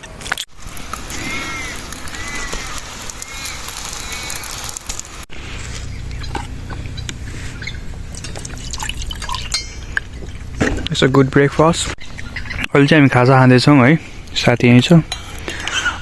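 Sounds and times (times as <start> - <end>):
steady low hum: 0.1 - 16.0
short arching chirps: 1.2 - 10.6.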